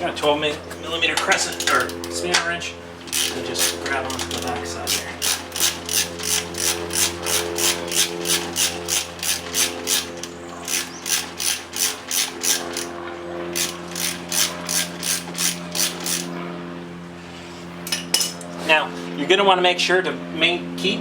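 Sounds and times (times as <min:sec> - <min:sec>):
ratchet wrench clicking: 0:03.1 - 0:12.9, 0:13.5 - 0:16.3.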